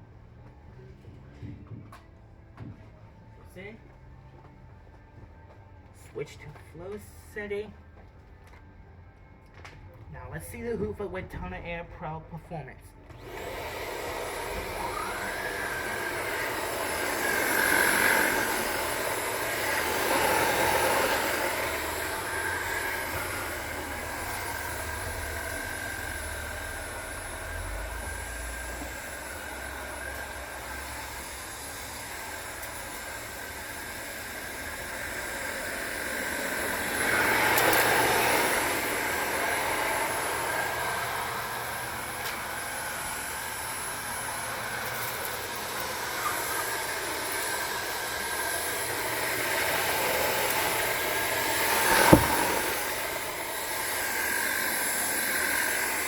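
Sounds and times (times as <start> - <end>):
vacuum cleaner motor whine: 13.0 - 56.0
sharp knock: 52.0 - 52.6.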